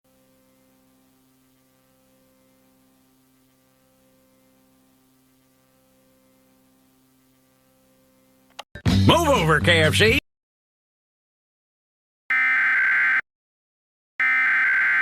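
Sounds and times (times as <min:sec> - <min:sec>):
faint steady hum: 0:12.3 - 0:13.2, 0:14.2 - 0:15.0.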